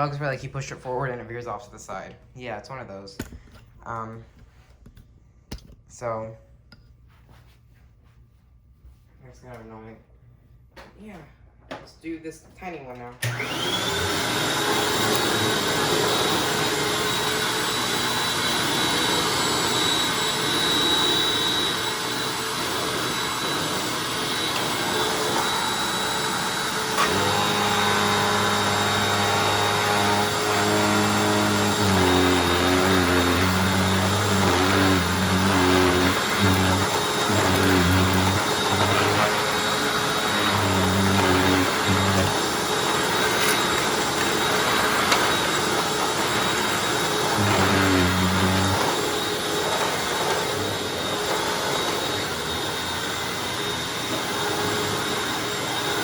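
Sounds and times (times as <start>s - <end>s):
vacuum cleaner motor whine: 13.2s - 56.0s.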